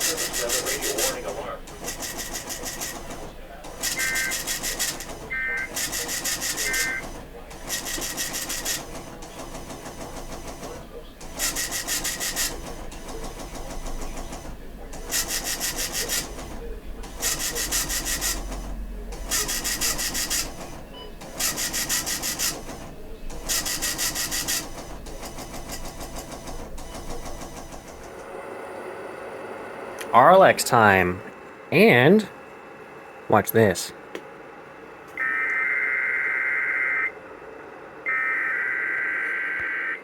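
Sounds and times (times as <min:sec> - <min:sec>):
radio static hiss: 0:00.0 - 0:09.6.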